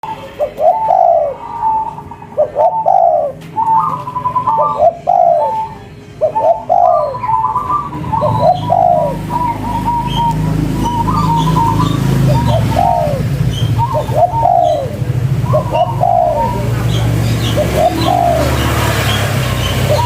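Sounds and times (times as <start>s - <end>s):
dove cooing: 0.0s - 20.0s.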